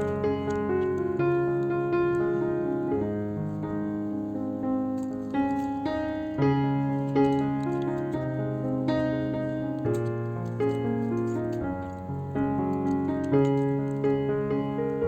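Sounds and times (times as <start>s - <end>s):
slow piano chords: 0.0s - 15.0s.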